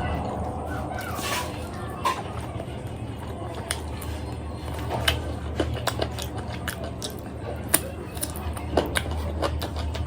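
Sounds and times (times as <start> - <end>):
steady low hum: 0.0 - 6.6
chewing and wet mouth smacks: 3.6 - 10.0.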